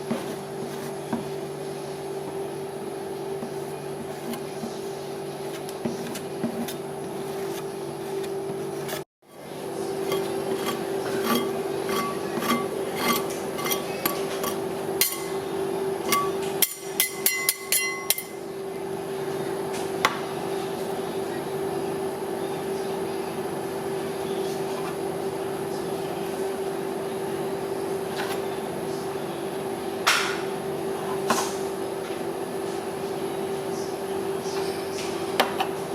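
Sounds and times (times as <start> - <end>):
metal spatulas tapping steel plate: 16.1 - 18.3.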